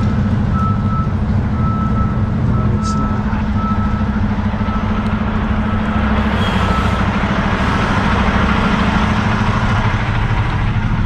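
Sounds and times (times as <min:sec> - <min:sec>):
truck diesel engine running: 0:00.0 - 0:11.0.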